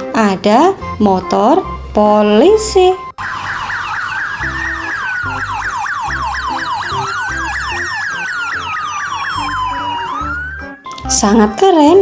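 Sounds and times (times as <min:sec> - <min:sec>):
electronic police siren: 0:02.3 - 0:11.2.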